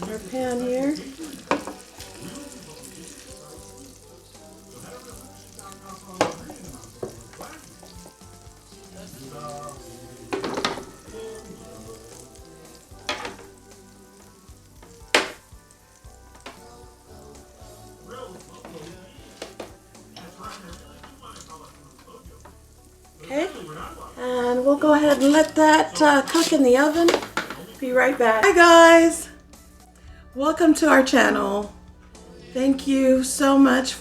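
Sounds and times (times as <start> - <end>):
cookware knocking: 0.0 - 2.3, 6.2 - 8.4, 10.2 - 12.4, 13.0 - 13.6, 14.8 - 15.5, 16.3 - 16.8, 18.4 - 22.6, 24.7 - 29.1
steak sizzling in a pan: 0.0 - 34.0.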